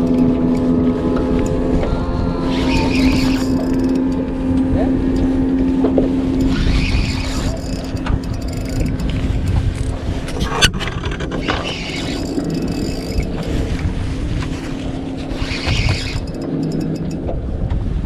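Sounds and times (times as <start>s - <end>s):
boat engine running: 0.0s - 18.0s.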